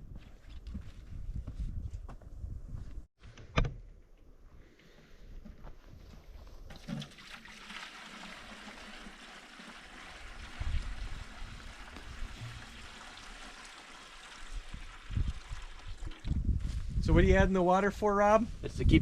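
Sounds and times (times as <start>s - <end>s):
water trickling: 6.8s - 16.4s.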